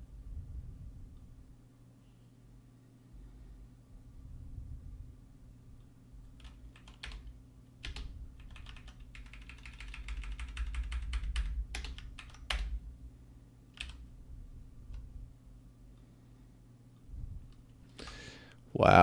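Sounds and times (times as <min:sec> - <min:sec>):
low steady hum: 0:00.0 - 0:19.0
typing on computer keyboard: 0:06.3 - 0:12.8, 0:13.8 - 0:14.1.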